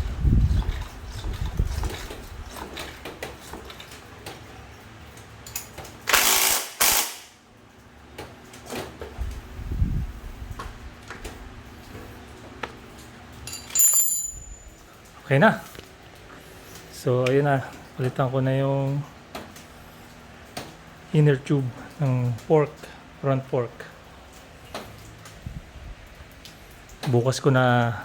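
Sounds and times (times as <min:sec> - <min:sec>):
metal hand tools clinking: 0:13.4 - 0:14.8.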